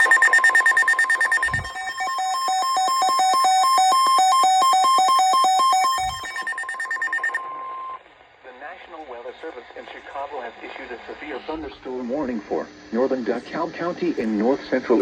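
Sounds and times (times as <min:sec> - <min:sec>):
steady alarm tone: 0:00.0 - 0:08.0
two-pitch alternating beeps: 0:00.0 - 0:08.0.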